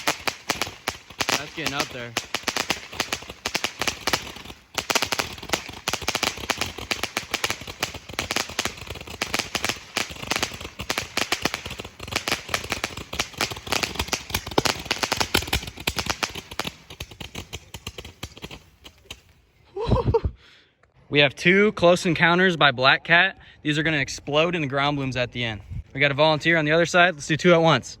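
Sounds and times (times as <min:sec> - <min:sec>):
firework pops and crackles: 0:00.0 - 0:19.4.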